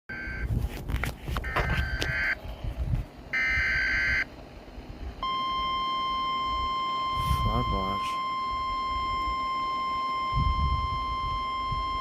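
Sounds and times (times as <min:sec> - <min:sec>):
screeching digital data tones: 0:05.2 - 0:09.4.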